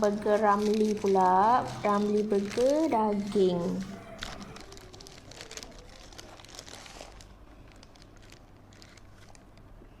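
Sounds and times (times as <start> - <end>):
wrapper crinkling: 0.0 - 10.0.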